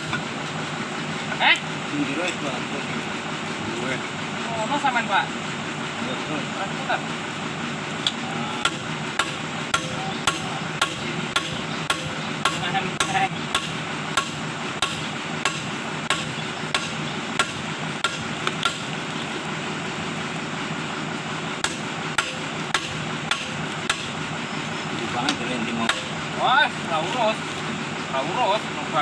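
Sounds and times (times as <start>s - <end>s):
hammer blows: 8.6s - 18.9s.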